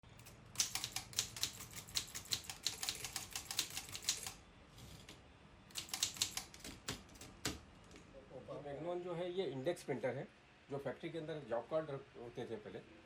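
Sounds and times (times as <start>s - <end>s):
typewriter keys clacking: 0.2s - 4.4s, 5.7s - 7.6s.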